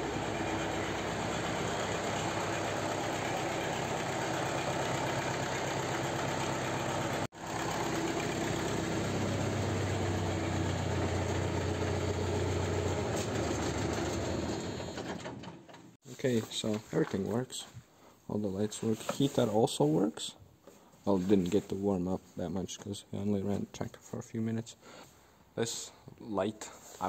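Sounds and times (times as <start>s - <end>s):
tractor diesel engine idling: 0.0s - 15.4s.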